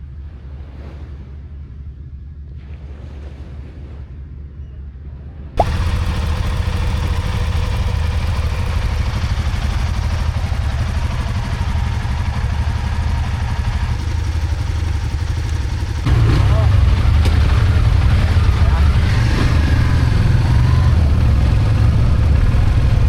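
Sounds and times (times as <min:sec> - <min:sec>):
motorcycle engine running: 0:05.6 - 0:23.0.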